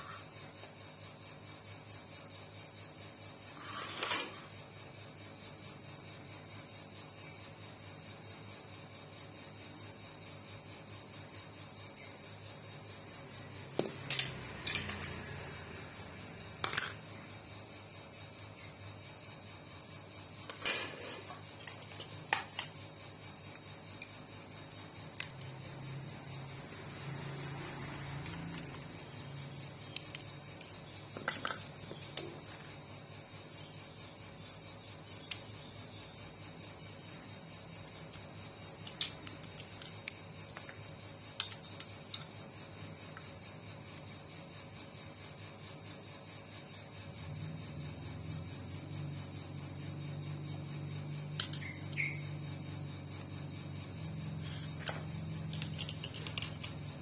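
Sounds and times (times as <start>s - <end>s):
metal tools clinking: 13.8s - 15.2s, 16.6s - 17.1s, 54.4s - 56.9s.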